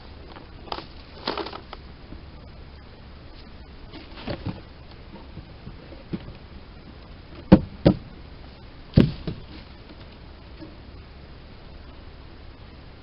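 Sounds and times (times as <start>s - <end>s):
wooden boxes knocking: 7.4s - 8.1s, 9.0s - 9.6s.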